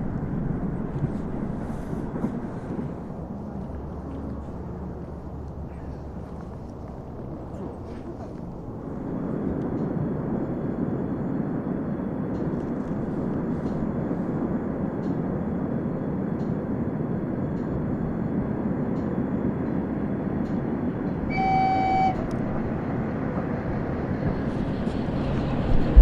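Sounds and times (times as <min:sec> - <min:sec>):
train rumbling on rails: 0:00.0 - 0:26.0
locomotive horn toot: 0:21.3 - 0:22.8.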